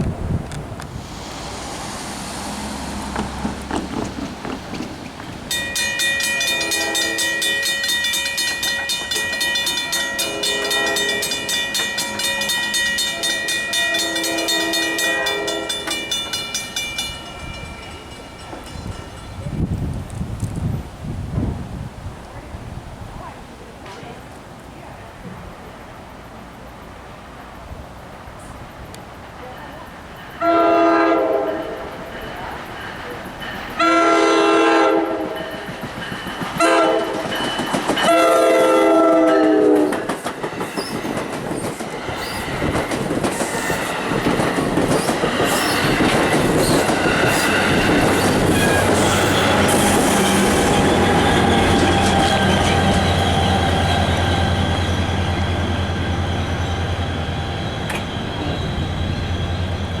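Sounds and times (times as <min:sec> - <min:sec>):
train wheels clattering over rails: 0:00.0 - 0:20.6, 0:29.0 - 1:00.0
train horn: 0:06.2 - 0:07.9, 0:09.5 - 0:16.2, 0:30.4 - 0:31.9, 0:33.8 - 0:35.5, 0:36.6 - 0:37.3, 0:38.0 - 0:40.1, 0:46.6 - 1:00.0
locomotive engine drone: 0:44.0 - 1:00.0.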